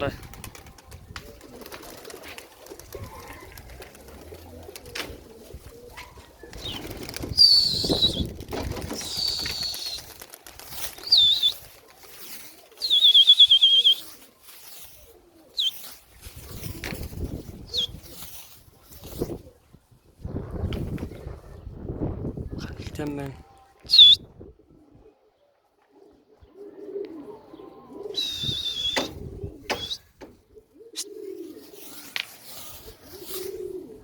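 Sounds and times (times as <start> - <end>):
pigeon wings flapping: 0.1 - 19.4
high whistled calls: 6.6 - 8.3, 8.9 - 10.1, 11.0 - 11.6, 12.8 - 14.1, 15.6 - 15.8, 23.9 - 24.2, 28.1 - 30.1.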